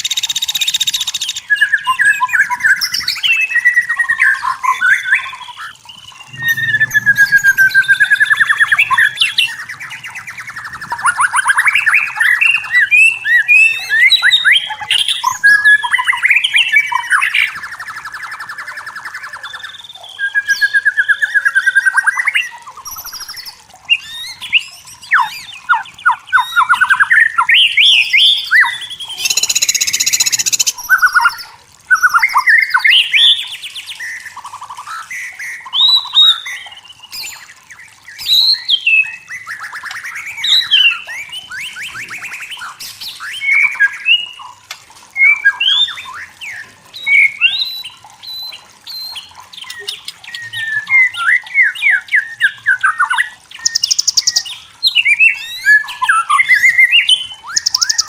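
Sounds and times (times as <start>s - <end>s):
bird singing whistled phrases: 0.0s - 44.5s, 45.2s - 58.0s
harsh rasping bird note: 6.2s - 9.8s.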